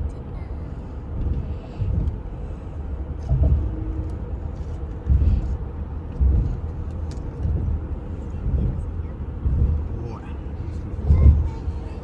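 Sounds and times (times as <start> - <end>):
car road rumble from inside: 0.0 - 12.0.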